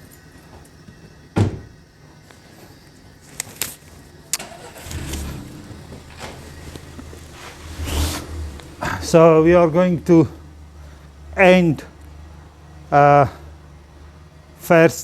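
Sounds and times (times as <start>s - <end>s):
low rumbling noise: 4.4s - 14.6s.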